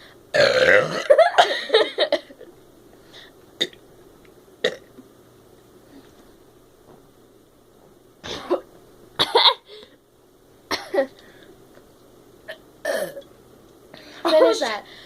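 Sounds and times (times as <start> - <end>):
person burping loudly: 0.3 - 1.2, 3.6 - 3.8, 4.6 - 4.9, 12.5 - 13.3
sharp throat sounds: 0.4 - 1.1, 3.6 - 3.8, 4.6 - 4.9.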